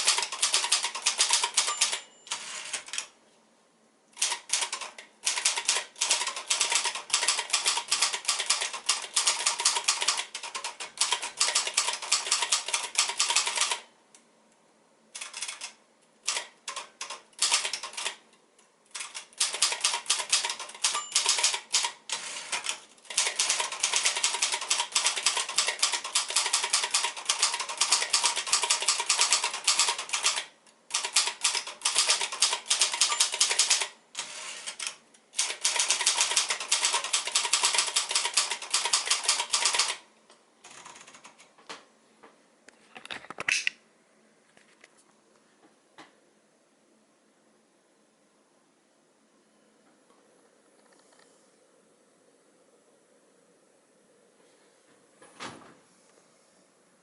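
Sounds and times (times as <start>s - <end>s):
typewriter keystrokes: 0.0s - 3.1s, 4.2s - 13.9s, 15.2s - 18.2s, 18.9s - 40.0s.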